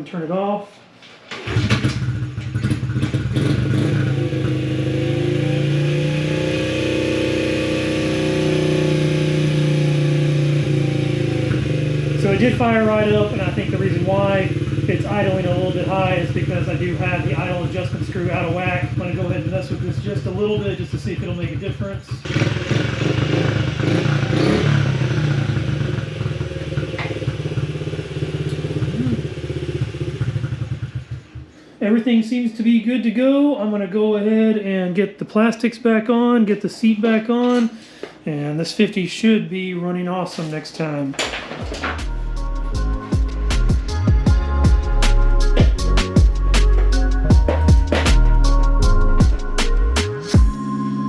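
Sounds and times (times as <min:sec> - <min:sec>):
motorcycle engine idling: 0:06.8 - 0:31.6.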